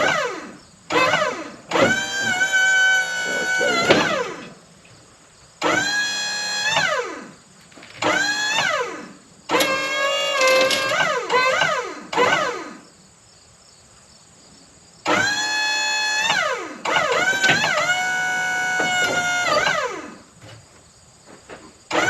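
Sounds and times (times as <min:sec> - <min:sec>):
hydraulic pump whining: 0:00.0 - 0:04.9, 0:05.6 - 0:07.3, 0:07.9 - 0:12.7, 0:15.1 - 0:20.2.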